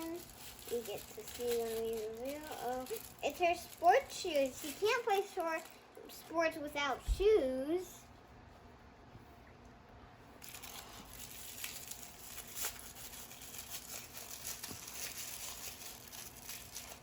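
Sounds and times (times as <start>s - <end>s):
plastic packet crinkling: 0.0s - 6.3s, 10.4s - 17.0s.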